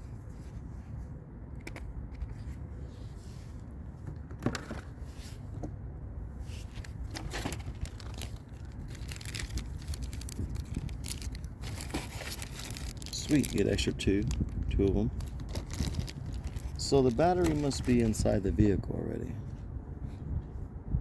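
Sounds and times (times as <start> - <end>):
wind rumble on microphone: 0.0 - 21.0
plastic packaging crinkling: 6.7 - 18.3.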